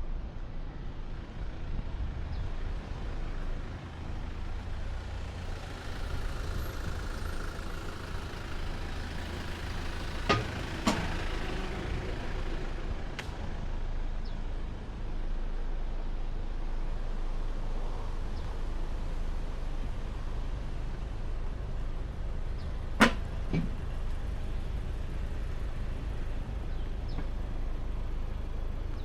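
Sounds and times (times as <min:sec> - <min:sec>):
steady low traffic rumble: 0:00.0 - 0:29.0.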